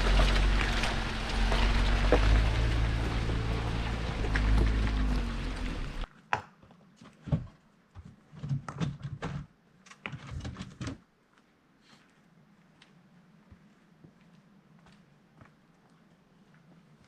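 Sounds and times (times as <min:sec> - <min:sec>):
car engine running: 0:00.0 - 0:06.1.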